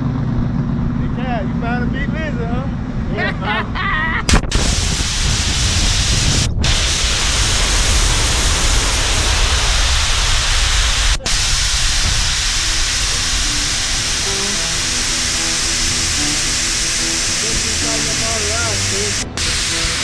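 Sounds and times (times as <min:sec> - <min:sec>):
faint music: 0:12.3 - 0:20.0.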